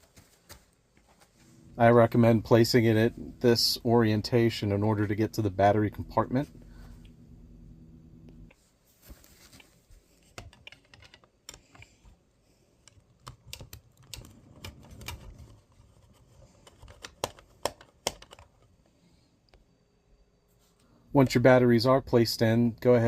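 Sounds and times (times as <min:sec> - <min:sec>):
plastic clicks and taps: 0:16.6 - 0:18.6.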